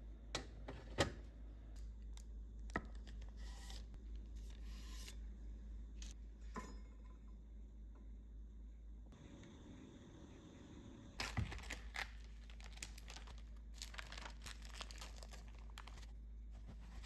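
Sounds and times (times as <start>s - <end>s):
low steady hum: 0.0s - 17.0s
packaging rustling: 11.2s - 17.0s.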